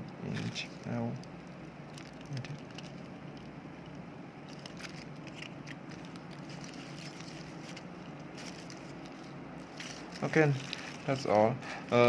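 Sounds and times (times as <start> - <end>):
steady low hum: 0.0 - 12.0
small parts clicking and crinkling: 0.3 - 11.3.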